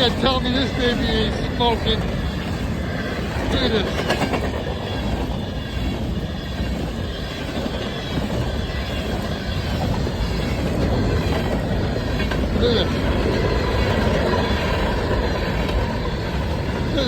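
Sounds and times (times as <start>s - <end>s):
train wheels rumbling on rails: 0.0s - 17.0s.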